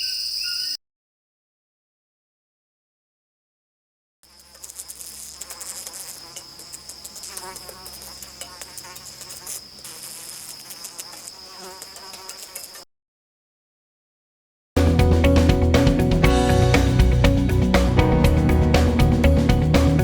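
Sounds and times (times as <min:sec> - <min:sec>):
insect chorus high-pitched whine: 0:00.0 - 0:00.8, 0:04.3 - 0:12.8
wavering insect chirps: 0:00.0 - 0:00.8, 0:04.3 - 0:12.8
dense rapid insect clicking: 0:04.3 - 0:12.8.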